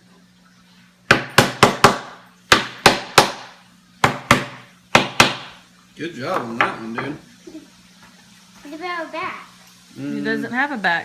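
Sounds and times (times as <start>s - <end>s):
hammer striking nails into wood: 1.1s - 5.6s.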